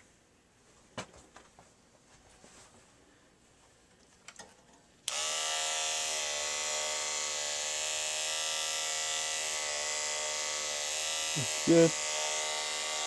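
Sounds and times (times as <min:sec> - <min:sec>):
hair clippers buzzing: 0:05.1 - 0:13.0.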